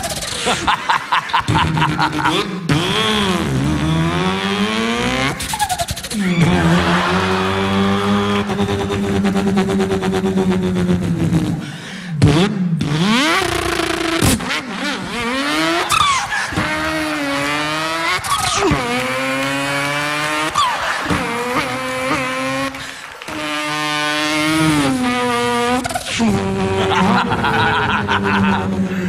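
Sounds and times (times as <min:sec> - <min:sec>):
man imitating engine revving: 0:00.0 - 0:05.5, 0:06.1 - 0:29.0.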